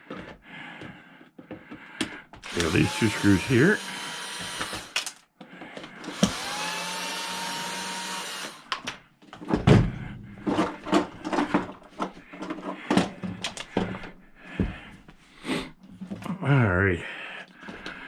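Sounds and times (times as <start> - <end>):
plastic parts and tools clicking: 2.0 - 9.6, 10.5 - 14.1
power drill running: 2.4 - 5.2, 6.0 - 8.8.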